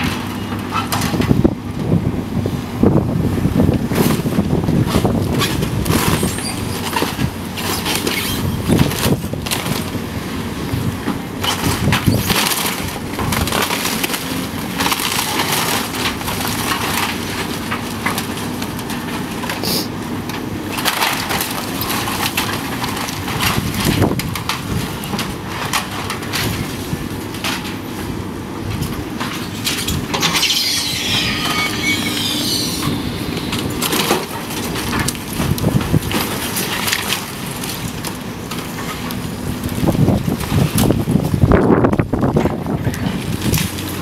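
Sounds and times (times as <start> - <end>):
low machinery rumble: 0.0 - 44.0
falling debris crashes: 11.4 - 19.6, 20.6 - 28.1, 28.7 - 41.6
timber cracking and splintering: 11.4 - 19.7, 20.3 - 27.8, 33.4 - 44.0.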